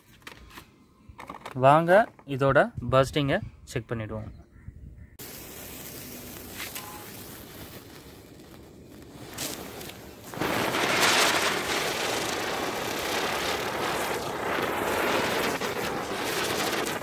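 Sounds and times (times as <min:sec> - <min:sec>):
firework fuse spitting: 0:05.2 - 0:17.0
firework sparks hissing: 0:05.2 - 0:17.0.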